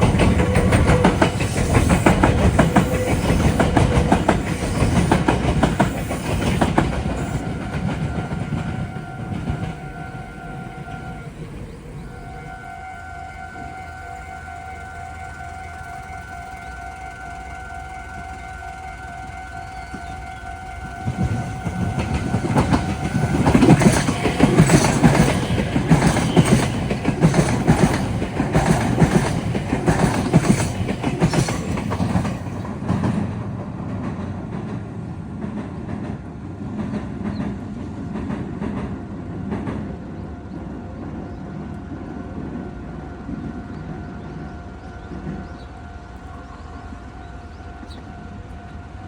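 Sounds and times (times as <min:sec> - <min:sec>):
train wheels clattering over rail joints: 0:00.0 - 0:12.2, 0:20.9 - 0:40.0.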